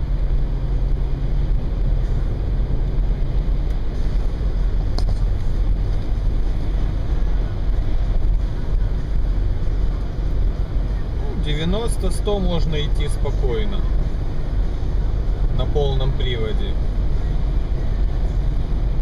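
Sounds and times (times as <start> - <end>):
car engine and tyres droning: 0.0 - 19.0.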